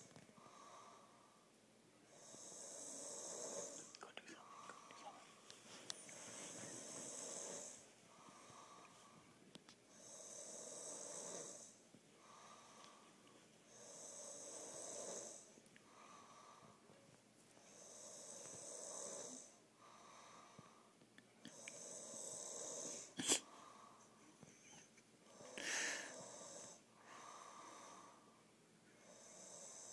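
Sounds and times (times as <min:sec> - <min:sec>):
deep snoring: 0:02.1 - 0:05.2, 0:06.1 - 0:09.2, 0:09.9 - 0:13.0, 0:13.7 - 0:16.8, 0:17.7 - 0:20.8, 0:21.5 - 0:24.0, 0:25.3 - 0:28.3, 0:29.0 - 0:29.9.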